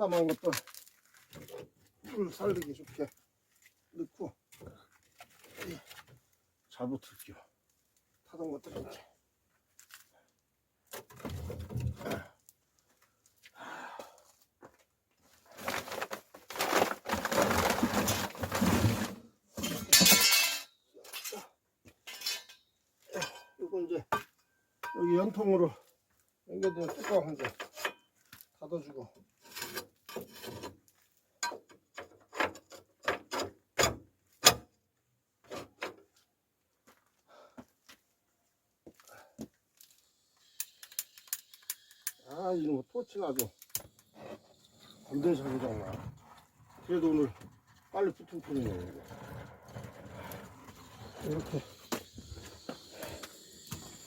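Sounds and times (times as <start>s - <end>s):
logs shifted in wood stove: 15.4s - 20.2s, 43.0s - 54.0s.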